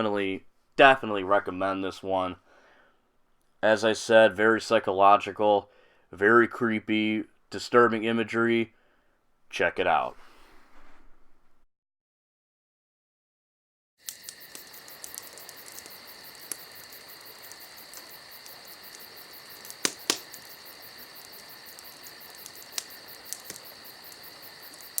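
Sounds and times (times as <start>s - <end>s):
insects chirping: 14.0s - 25.0s
sharp clicks: 14.0s - 25.0s.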